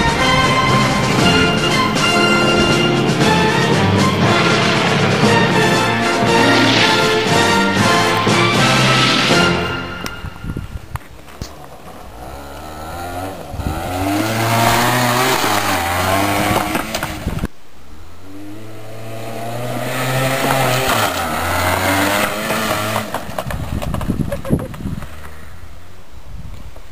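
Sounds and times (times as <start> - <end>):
engine revving up: 0.0 - 10.4, 11.9 - 17.3, 18.2 - 23.4.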